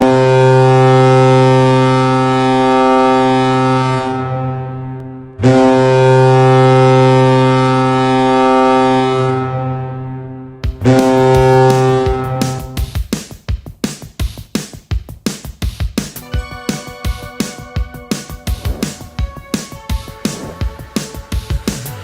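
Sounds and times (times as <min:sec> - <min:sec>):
goal horn blasts: 0:00.0 - 0:12.8.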